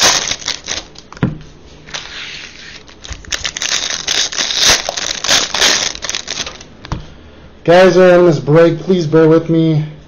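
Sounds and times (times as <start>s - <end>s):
wrappers crinkling: 0.0s - 1.2s, 1.9s - 6.7s.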